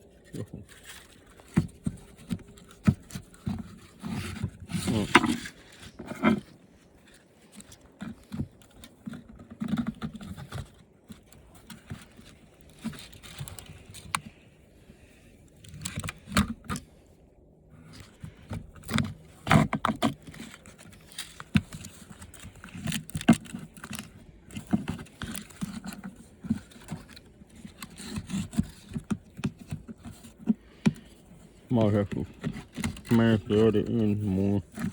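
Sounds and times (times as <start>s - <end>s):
plastic and metal parts clicking: 17.9s - 34.9s.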